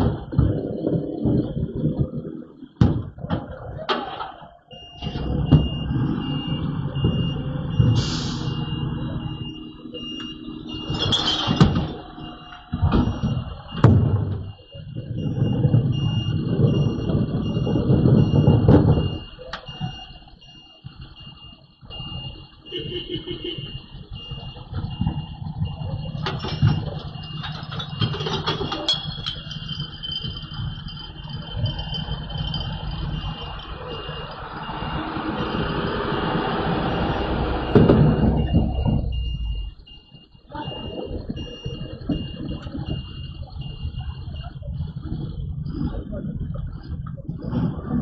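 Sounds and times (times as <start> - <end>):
diesel engine running: 0.0 - 48.0
reversing beeper beeping: 3.6 - 47.8
metal bangs and clangs: 8.6 - 19.3, 24.5 - 34.0.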